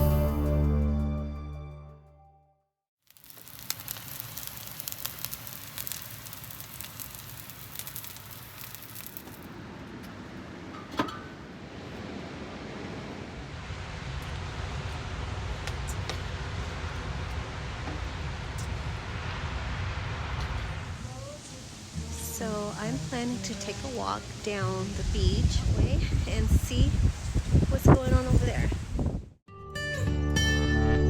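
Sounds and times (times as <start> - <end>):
crackles: 3.0 - 10.2
wind buffeting microphone: 24.8 - 29.4.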